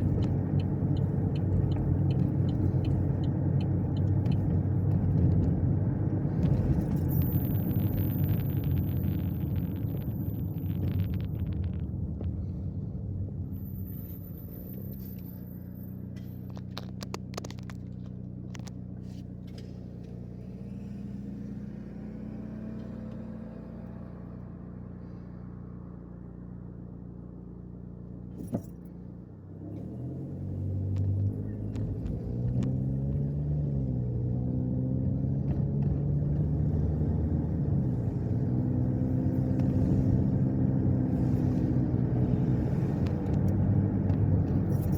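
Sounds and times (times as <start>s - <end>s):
car engine accelerating: 0.0s - 13.4s
car engine and road noise: 0.0s - 44.9s.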